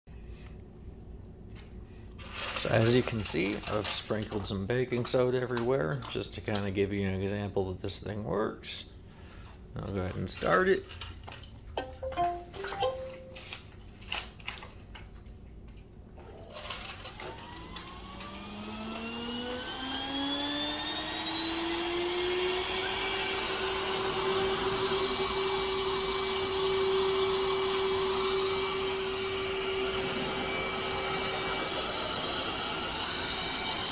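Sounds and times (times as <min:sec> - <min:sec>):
robot vacuum motor whine: 0:16.6 - 0:33.9.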